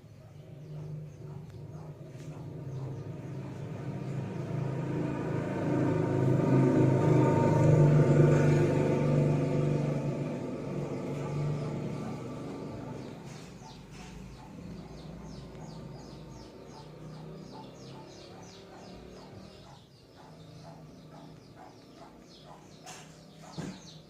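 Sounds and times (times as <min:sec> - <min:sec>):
bird chirping: 0:00.0 - 0:24.0
vehicle engine hum: 0:00.0 - 0:24.0.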